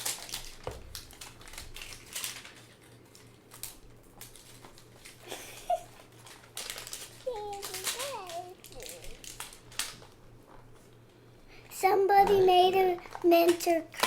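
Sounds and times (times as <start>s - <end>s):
card box clicks and crinkles: 6.2s - 10.0s.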